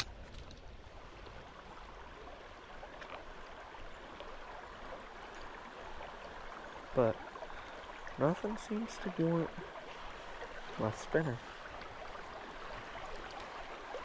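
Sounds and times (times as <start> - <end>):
creek water running: 0.0 - 14.0.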